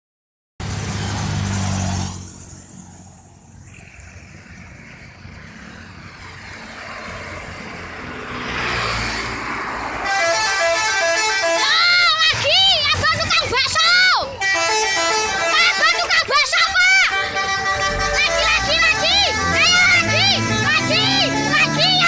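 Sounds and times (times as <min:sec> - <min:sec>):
passing vehicle road noise: 0:00.6 - 0:22.0
musical air horn playing a tune: 0:10.0 - 0:12.4, 0:14.0 - 0:22.0.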